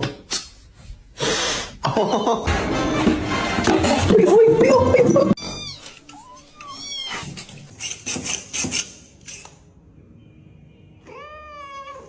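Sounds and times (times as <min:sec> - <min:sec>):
cat meowing: 0:05.4 - 0:07.4, 0:11.0 - 0:12.0.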